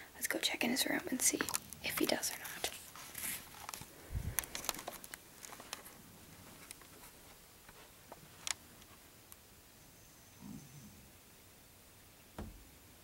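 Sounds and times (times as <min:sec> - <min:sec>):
light footsteps: 0:01.0 - 0:09.2
phone handling clicks and rustles: 0:01.2 - 0:06.0
dull low thump: 0:12.4 - 0:12.7.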